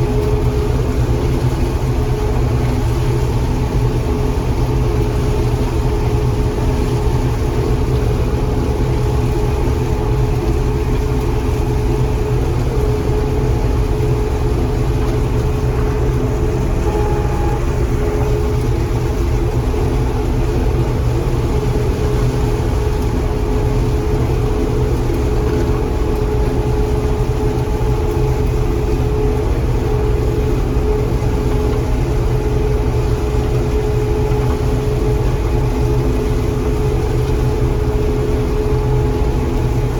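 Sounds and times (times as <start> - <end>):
combine engine rumble: 0.0 - 39.9
machine whine: 5.8 - 36.3.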